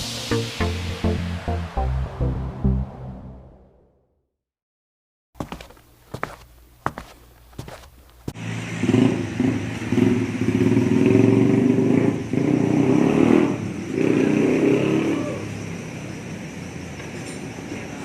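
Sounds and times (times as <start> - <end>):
motorcycle engine running: 8.3 - 12.7.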